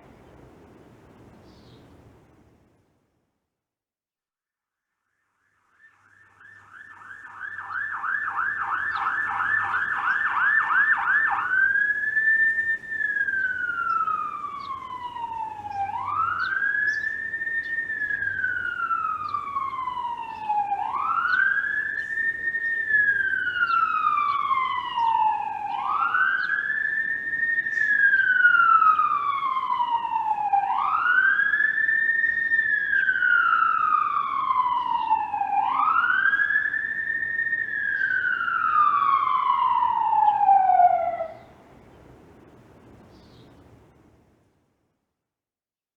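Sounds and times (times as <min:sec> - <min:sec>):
ambulance siren yelp and wail: 0:06.0 - 0:41.7.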